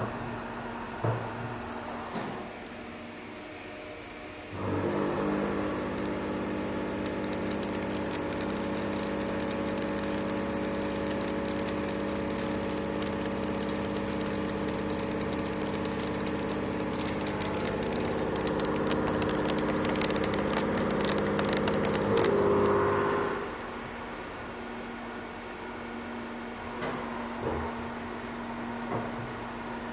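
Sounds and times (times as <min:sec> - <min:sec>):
machine hum: 0:02.6 - 0:24.0.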